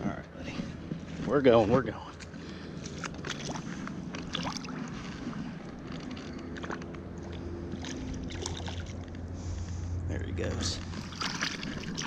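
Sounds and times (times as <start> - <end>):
faint steady hum: 0.0 - 12.0
outdoor rumble: 0.0 - 12.0.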